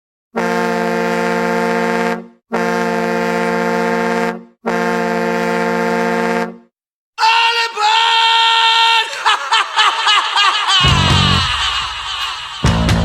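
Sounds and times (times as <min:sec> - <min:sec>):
hockey goal horn blasts: 0:00.4 - 0:06.7.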